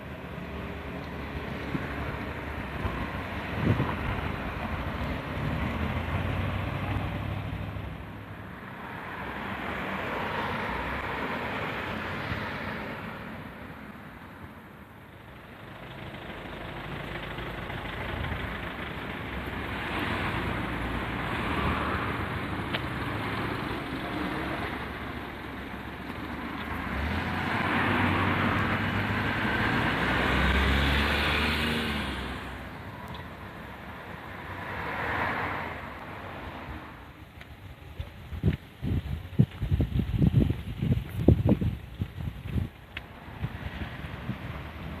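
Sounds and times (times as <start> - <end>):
vehicles passing: 0.0 - 45.0.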